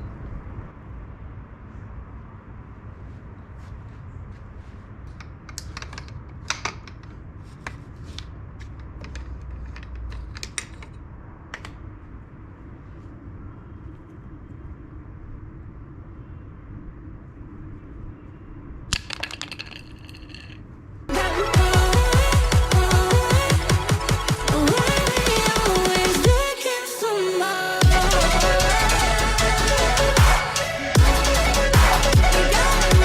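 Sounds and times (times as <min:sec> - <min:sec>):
small hard objects clicking: 0:18.9 - 0:20.6
electronic dance music: 0:21.1 - 0:33.0.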